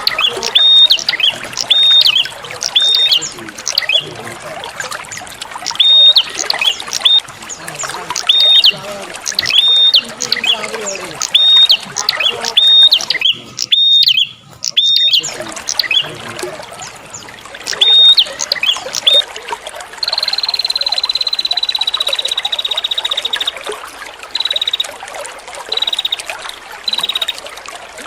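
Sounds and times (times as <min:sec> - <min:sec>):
songbird whistling: 0:00.0 - 0:04.1, 0:05.6 - 0:16.1, 0:16.9 - 0:19.3, 0:20.0 - 0:23.6, 0:24.4 - 0:25.0, 0:25.7 - 0:26.3, 0:26.9 - 0:27.4
trickling water: 0:00.0 - 0:28.0.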